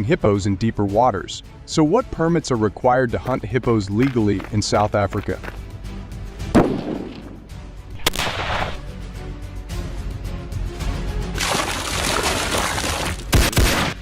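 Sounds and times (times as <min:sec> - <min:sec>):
background music: 0:00.0 - 0:14.0
sharp crack: 0:06.5 - 0:08.8, 0:11.4 - 0:14.0.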